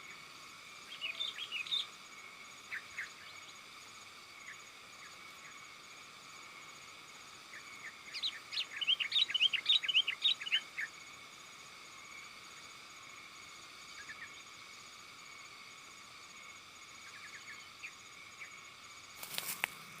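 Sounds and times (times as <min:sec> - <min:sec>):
faint insect trill: 0:00.0 - 0:20.0
bird chirping: 0:00.9 - 0:01.9, 0:07.5 - 0:11.0, 0:17.0 - 0:18.6.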